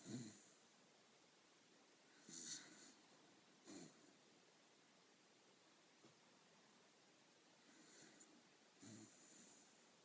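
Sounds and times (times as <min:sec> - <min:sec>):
dog snoring: 0:00.0 - 0:00.6, 0:02.2 - 0:03.0, 0:03.6 - 0:04.1, 0:07.7 - 0:09.7
faint breathing: 0:02.0 - 0:04.2, 0:07.6 - 0:09.9.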